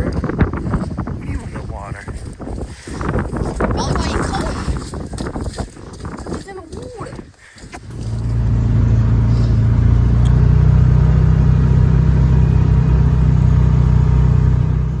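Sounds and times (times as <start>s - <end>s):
vehicle engine running: 7.8s - 15.0s.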